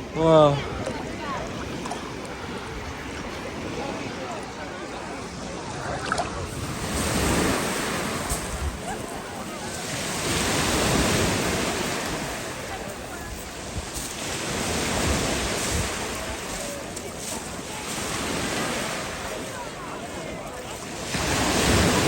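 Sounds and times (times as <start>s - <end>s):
sea waves washing in: 0.0s - 22.0s
wind buffeting microphone: 5.0s - 18.3s.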